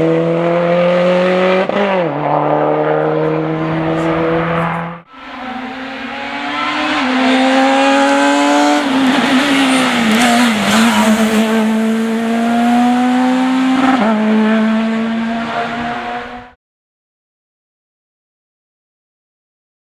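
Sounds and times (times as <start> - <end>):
rally car engine revving: 0.0 - 16.6
tyre noise: 2.0 - 14.1.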